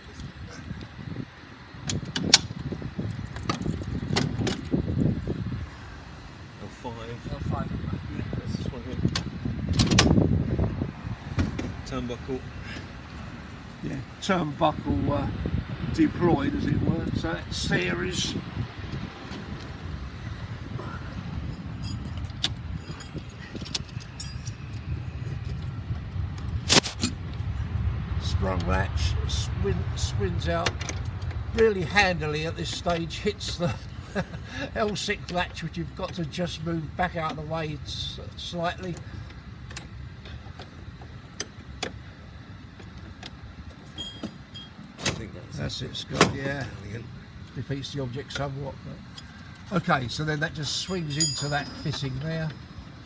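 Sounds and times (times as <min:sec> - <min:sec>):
low background rumble: 0:00.0 - 0:53.0
low rumble: 0:14.8 - 0:34.2
metal fittings clinking: 0:21.5 - 0:25.6, 0:43.9 - 0:44.8, 0:50.7 - 0:52.6.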